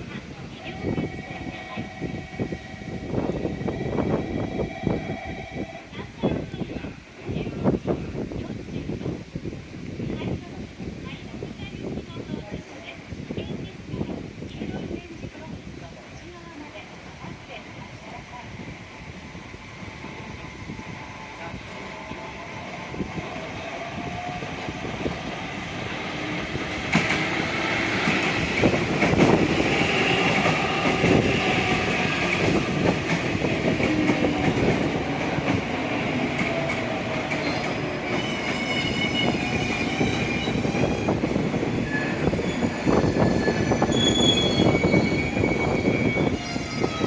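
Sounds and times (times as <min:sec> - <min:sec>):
train wheel-on-rail rumble: 0:00.0 - 0:47.0
train wheels squealing: 0:37.4 - 0:41.2, 0:41.8 - 0:47.0.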